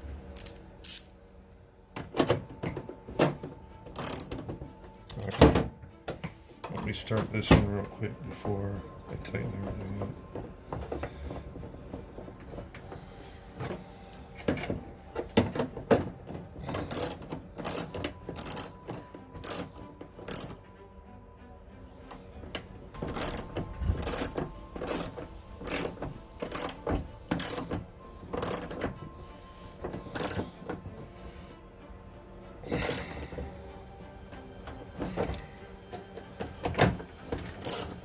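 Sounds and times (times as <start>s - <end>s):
ratchet wrench clicking: 0.4s - 1.1s, 4.0s - 4.3s, 5.2s - 5.4s, 16.9s - 18.8s, 19.4s - 19.7s, 20.3s - 20.6s, 23.1s - 27.7s, 28.4s - 28.8s, 30.2s - 30.4s, 32.8s - 33.0s, 37.6s - 38.0s.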